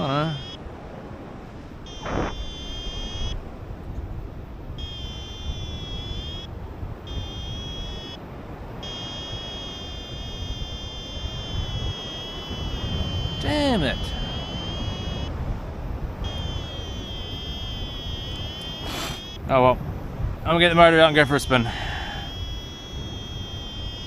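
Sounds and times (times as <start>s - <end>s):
variometer high electronic tone: 0.0s - 0.6s, 1.8s - 3.5s, 4.7s - 8.2s, 8.8s - 15.4s, 16.2s - 19.4s, 20.6s - 24.0s
wind rushing over microphone: 0.0s - 24.0s.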